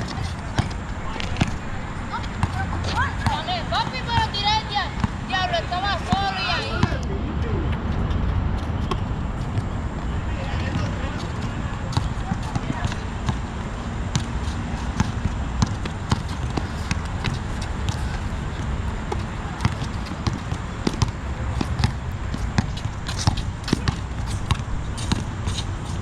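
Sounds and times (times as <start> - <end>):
basketball bouncing: 0.5 - 5.2, 15.0 - 18.0, 19.1 - 25.6.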